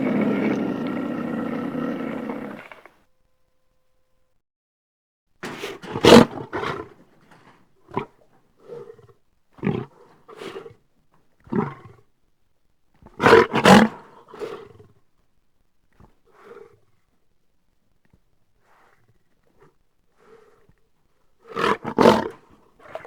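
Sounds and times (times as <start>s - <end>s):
beast growls and roars: 0.0s - 2.9s.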